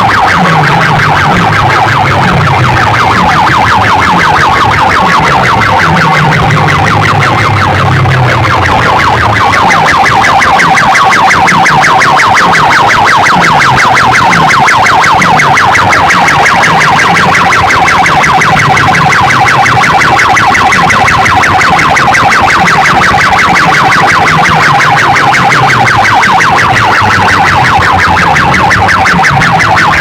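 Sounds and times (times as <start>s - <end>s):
repeating bass pattern: 0.0s - 30.0s
warbling electronic siren tone: 0.0s - 30.0s.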